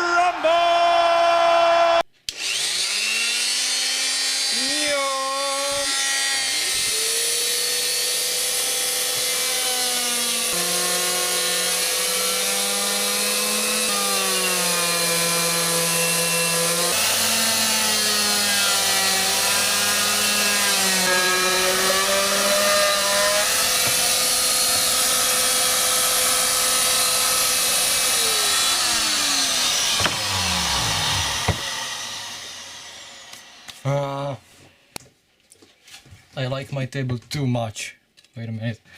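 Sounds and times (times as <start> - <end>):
power saw cutting wood: 2.3 - 34.4
saw motor winding down: 2.3 - 34.4.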